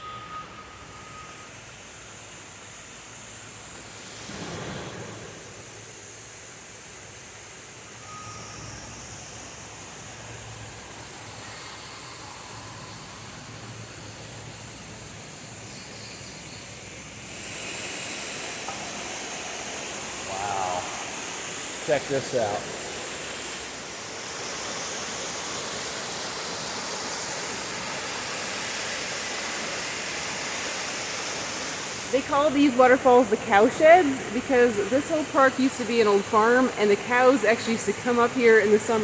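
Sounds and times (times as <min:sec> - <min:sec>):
short high beep: 0:08.0 - 0:08.7.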